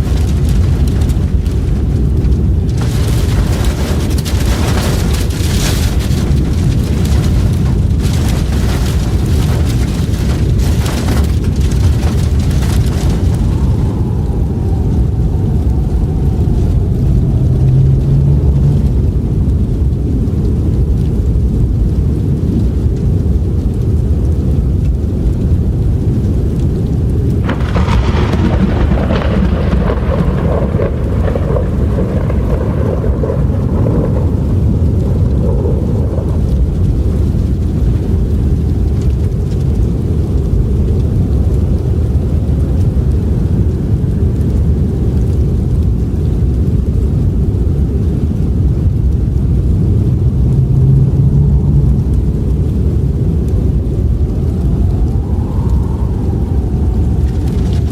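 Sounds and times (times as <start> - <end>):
howling storm wind: 0.0 - 57.9
wind blast with hiss: 27.0 - 38.6, 48.0 - 57.9.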